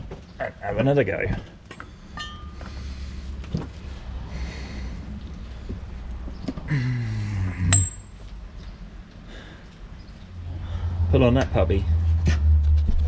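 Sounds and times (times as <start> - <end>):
man breathing hard: 1.8 - 7.8, 9.1 - 11.1
man groaning: 6.7 - 8.0.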